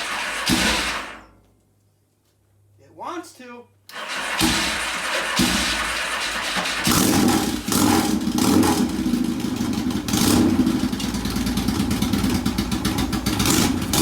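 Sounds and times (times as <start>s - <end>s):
motorcycle engine running unevenly: 6.7s - 14.0s.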